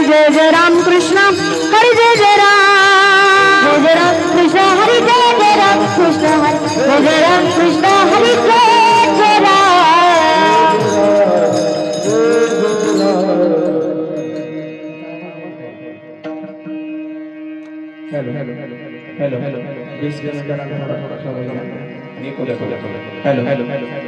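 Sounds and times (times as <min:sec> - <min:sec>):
person singing melodic line: 0:00.0 - 0:24.0
hand cymbals ticking: 0:03.8 - 0:15.2.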